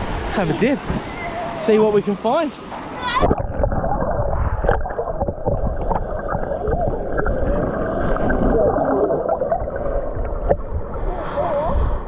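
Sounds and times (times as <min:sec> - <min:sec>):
water gurgling and sloshing: 0:02.7 - 0:12.0.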